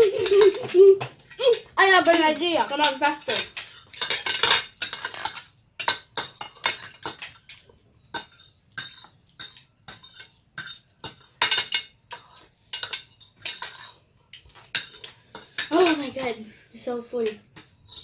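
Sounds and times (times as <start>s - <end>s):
cutlery clinking on plates: 0.0s - 16.4s, 17.2s - 18.0s.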